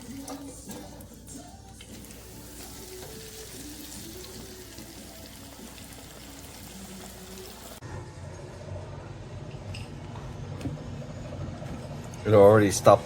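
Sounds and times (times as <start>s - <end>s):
hot oil sizzling in deep fryer: 1.9s - 7.8s.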